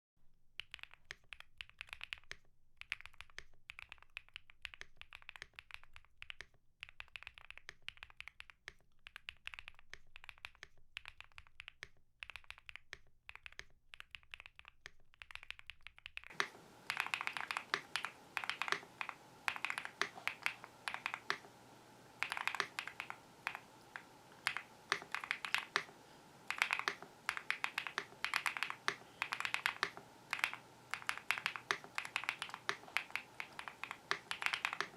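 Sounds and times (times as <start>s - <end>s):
mechanical keyboard typing: 0.6s - 21.5s, 22.2s - 34.9s
background hiss: 16.3s - 34.9s.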